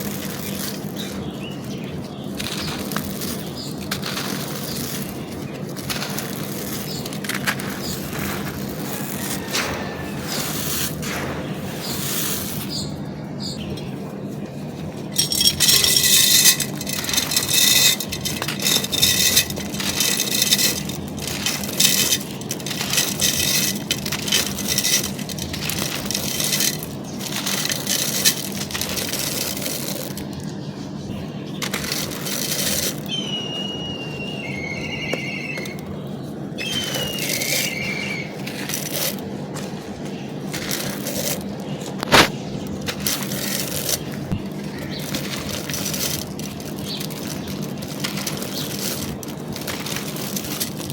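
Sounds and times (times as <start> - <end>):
charcoal being crushed by hand: 0.0 - 12.9, 14.8 - 30.6, 31.5 - 34.0, 36.6 - 50.9
high squeaky chirps: 33.0 - 35.8, 36.6 - 38.6.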